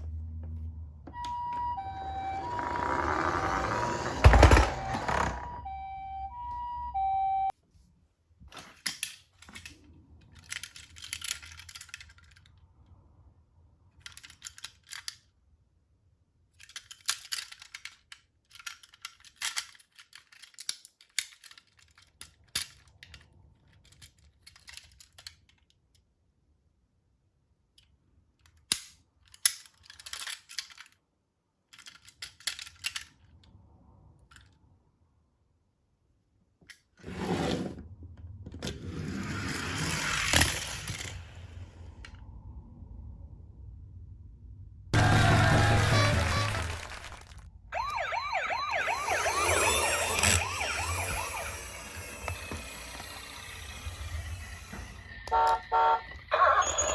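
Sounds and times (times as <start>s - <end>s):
toy car rattling on hard surface: 10.3s - 12.6s, 16.6s - 25.5s, 38.9s - 41.6s, 49.2s - 56.0s
faint low rumble: 41.0s - 45.2s.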